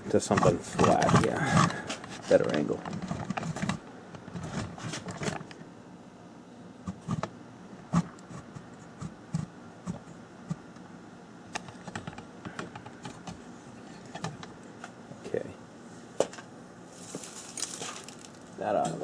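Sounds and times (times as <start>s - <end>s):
rustling: 16.9s - 18.6s.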